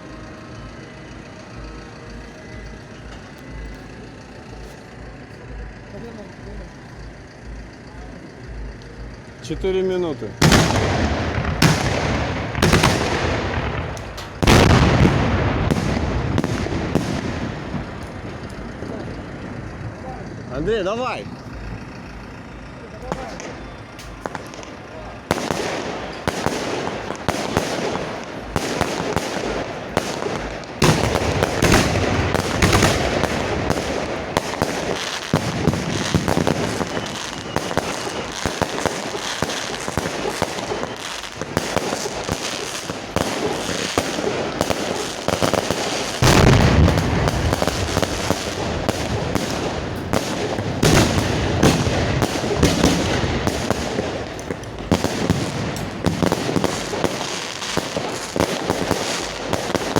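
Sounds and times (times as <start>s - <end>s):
fireworks bangs and cracks: 0.0s - 59.9s
heavy firework booms: 10.4s - 22.2s, 23.0s - 59.9s.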